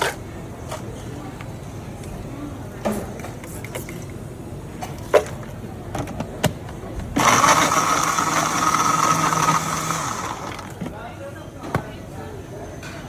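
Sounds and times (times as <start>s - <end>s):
electric blender running: 7.2s - 10.8s.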